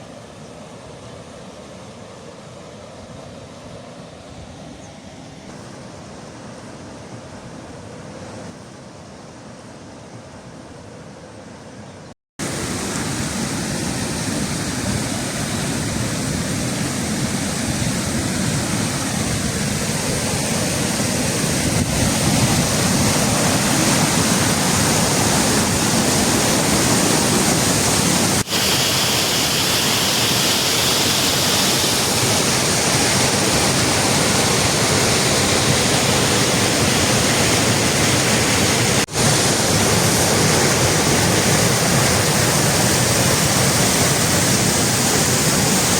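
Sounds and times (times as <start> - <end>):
waterfall rushing: 12.4 - 45.9.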